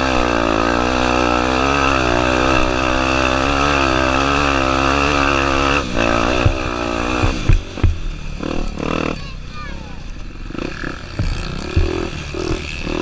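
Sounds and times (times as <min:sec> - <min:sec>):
motorcycle engine running: 0:00.0 - 0:13.0
sharp knocks: 0:06.2 - 0:08.1, 0:11.1 - 0:13.0.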